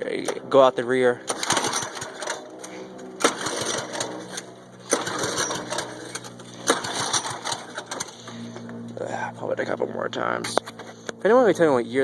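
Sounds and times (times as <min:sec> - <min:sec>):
recoil starter pulls: 0:01.2 - 0:08.7
small engine turning over: 0:01.3 - 0:08.9.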